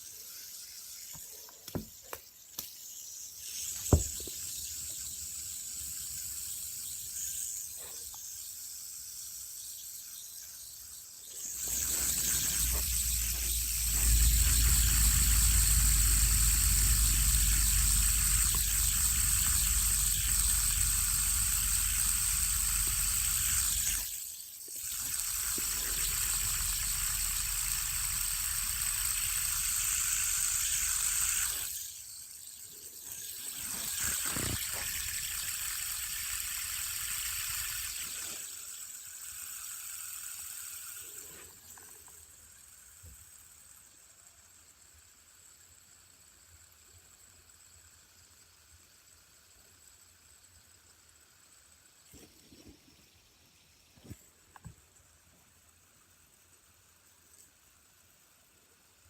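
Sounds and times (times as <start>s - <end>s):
fidget spinner clicks: 0.0s - 44.8s
fidget spinner whirring: 0.0s - 55.0s.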